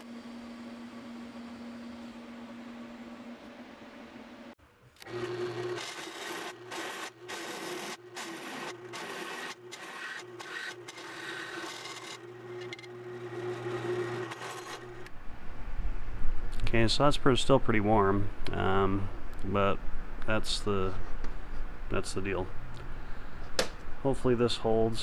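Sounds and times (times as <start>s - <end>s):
welding arc crackling and buzzing: 14.6s - 22.9s
steady hum: 14.8s - 25.0s.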